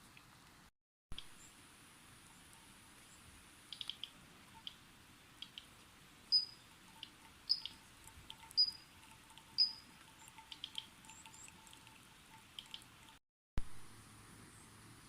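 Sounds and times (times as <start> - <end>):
soft bird chirps: 2.3 - 4.8, 6.3 - 12.0.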